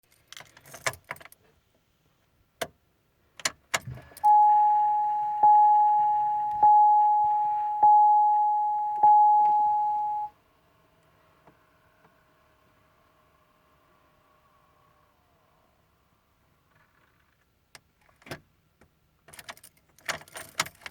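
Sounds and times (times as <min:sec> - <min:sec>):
dashboard warning chime: 0:04.2 - 0:10.3.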